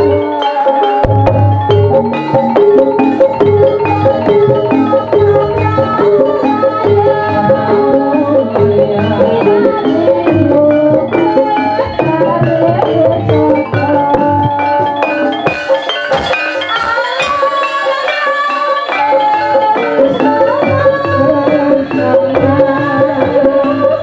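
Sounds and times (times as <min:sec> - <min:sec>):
hand drums: 0:00.0 - 0:24.0
metal mallet instruments ringing: 0:00.0 - 0:24.0.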